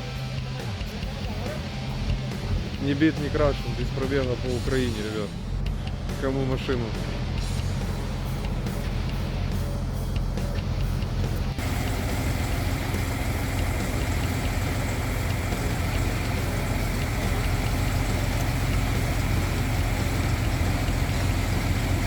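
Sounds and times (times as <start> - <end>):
vehicle engine idling: 0.0 - 22.0.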